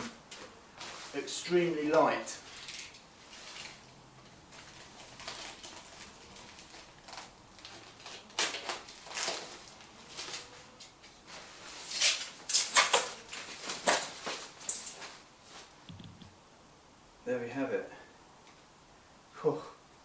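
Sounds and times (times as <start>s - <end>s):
packaging rustling and ripping: 2.4s - 3.8s, 4.5s - 10.7s, 11.3s - 15.7s.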